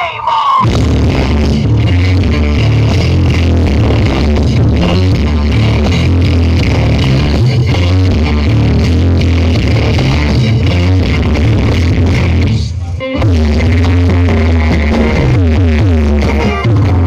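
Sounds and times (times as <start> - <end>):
loud music with heavy bass: 0.0 - 17.0.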